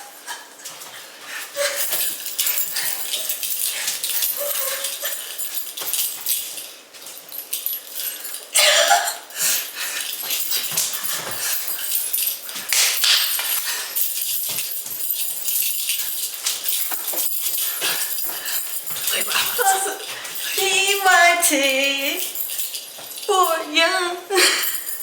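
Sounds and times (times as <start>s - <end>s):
dog whining: 4.3s - 5.3s.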